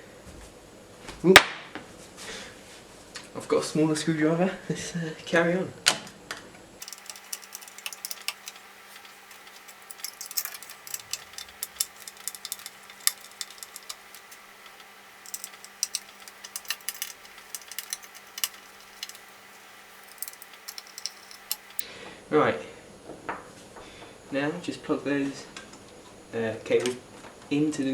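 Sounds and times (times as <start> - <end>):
screwdriver clicking against metal: 6.8 - 21.8.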